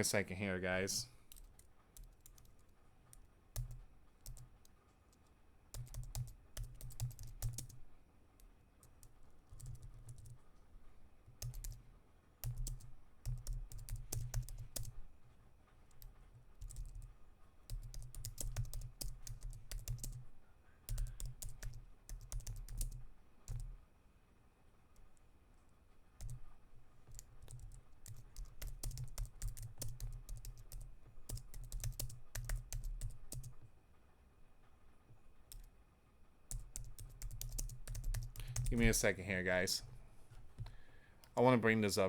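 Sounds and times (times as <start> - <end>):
typing on computer keyboard: 1.3 - 7.9, 8.8 - 10.5, 11.3 - 11.8, 12.4 - 15.1, 15.9 - 20.3, 20.9 - 23.8, 26.2 - 33.7, 35.5 - 35.7, 36.5 - 39.0.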